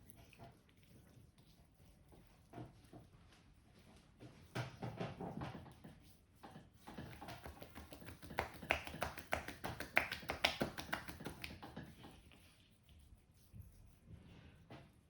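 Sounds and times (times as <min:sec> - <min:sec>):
hands tapping on head: 0:06.9 - 0:12.0.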